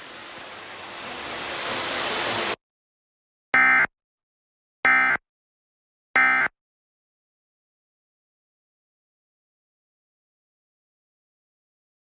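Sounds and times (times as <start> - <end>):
hiss: 0.0 - 2.6.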